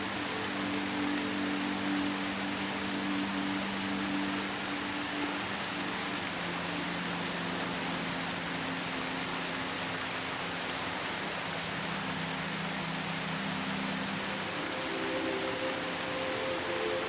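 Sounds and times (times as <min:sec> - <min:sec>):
soft ambient synth pad: 0:00.0 - 0:17.0
steady rain hiss: 0:00.0 - 0:17.0.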